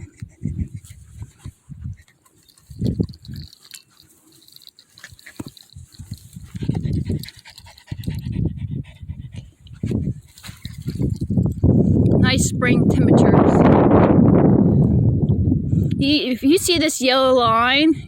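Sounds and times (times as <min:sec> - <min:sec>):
dog panting: 0:00.0 - 0:11.5.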